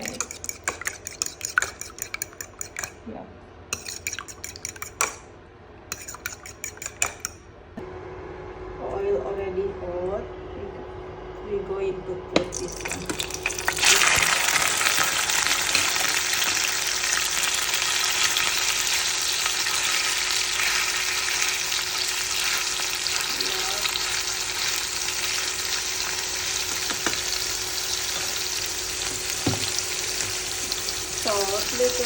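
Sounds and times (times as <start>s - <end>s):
food sizzling in oil: 12.5s - 32.0s.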